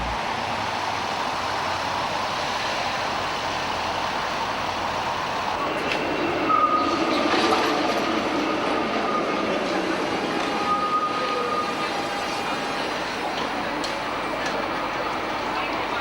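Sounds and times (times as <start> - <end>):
tram rumbling on rails: 0.0 - 16.0
high tones from tram wheels: 5.5 - 14.7.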